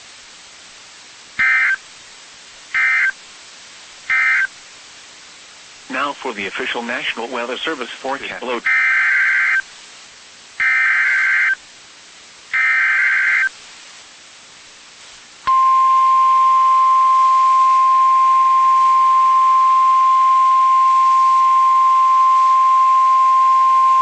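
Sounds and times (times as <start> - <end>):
steady warning alarm tone: 1.4 - 1.8, 2.8 - 3.1, 8.7 - 9.6, 10.6 - 11.6, 12.6 - 13.5
buzzy digital data bursts: 8.6 - 9.6, 10.6 - 11.6, 12.5 - 13.5.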